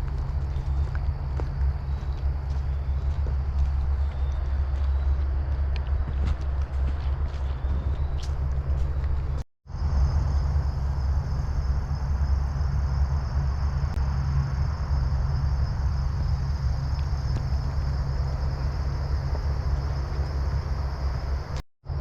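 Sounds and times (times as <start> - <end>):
wind rumbling on microphone: 0.0 - 22.0
high-pitched insect drone: 9.7 - 22.0.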